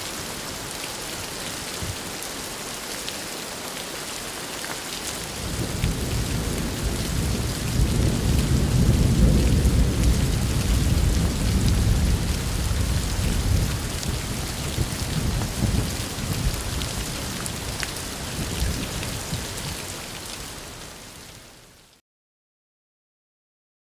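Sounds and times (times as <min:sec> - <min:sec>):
heavy rain hissing: 0:00.0 - 0:21.8
thunder rumbling: 0:05.4 - 0:19.5.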